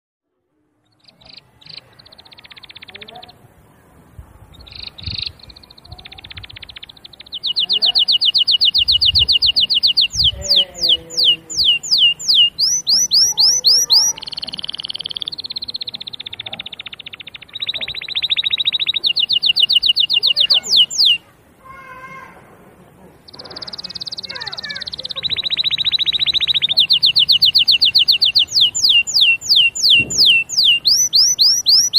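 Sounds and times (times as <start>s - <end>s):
canary singing: 0.8s - 22.2s, 23.2s - 31.9s.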